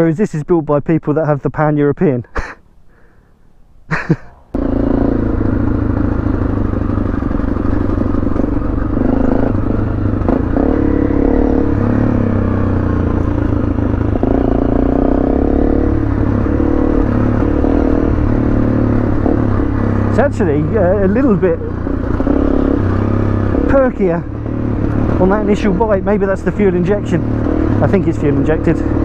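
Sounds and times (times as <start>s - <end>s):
motorcycle engine running: 4.5s - 29.0s
motorcycle clatter: 4.6s - 20.2s.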